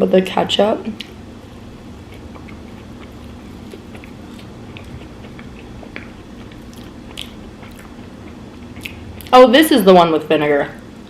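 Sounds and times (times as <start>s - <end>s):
low background hum: 0.0s - 11.0s
person chewing food: 1.8s - 9.4s
mouth clicks and smacks: 3.7s - 9.4s.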